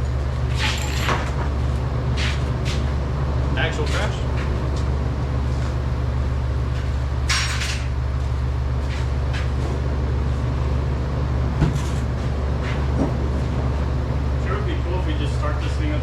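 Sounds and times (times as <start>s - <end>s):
low rumble: 0.0s - 8.8s.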